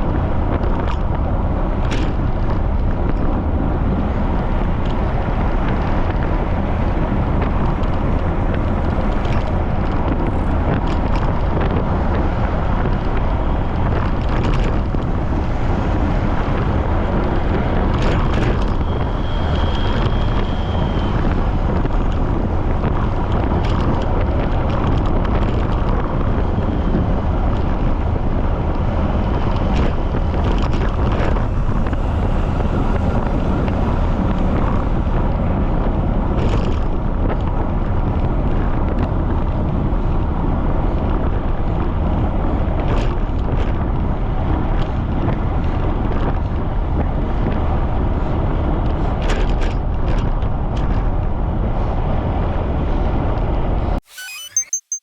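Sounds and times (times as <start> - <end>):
wind buffeting microphone: 0.0 - 54.0.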